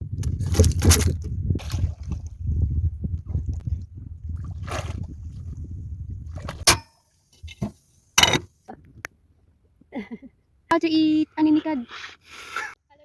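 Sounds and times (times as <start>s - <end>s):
wind and water rumbling: 0.0s - 6.8s.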